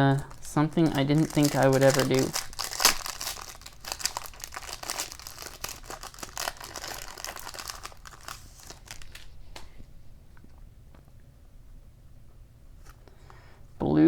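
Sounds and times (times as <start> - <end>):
card pack wrapper crinkling and tearing: 0.0 - 9.7.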